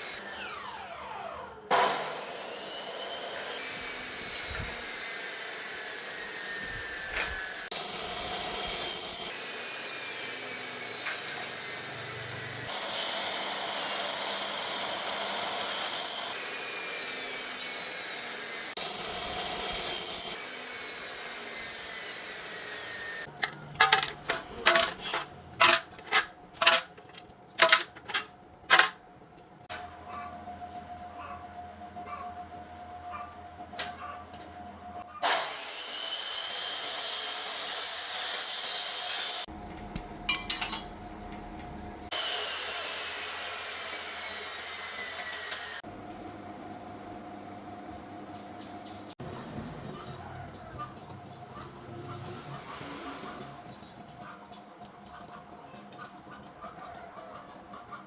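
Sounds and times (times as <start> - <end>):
power saw cutting aluminum: 0.0 - 29.0, 35.2 - 39.5, 42.1 - 45.8, 49.2 - 58.0.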